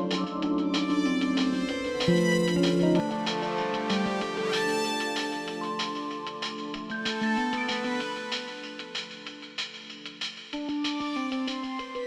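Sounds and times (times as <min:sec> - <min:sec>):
plucked guitar-like notes: 0:02.0 - 0:04.5.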